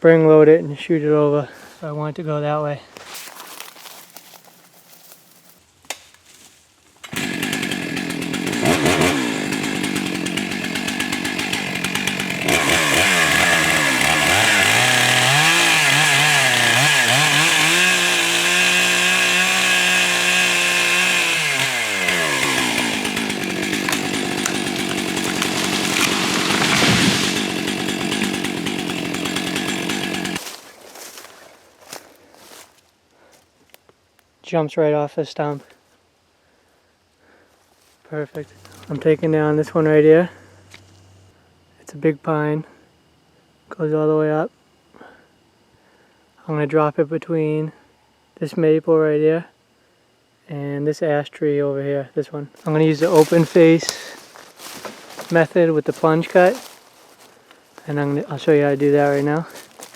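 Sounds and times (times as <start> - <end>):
chainsaw cutting: 7.0 - 32.8, 37.8 - 41.3, 52.6 - 59.9.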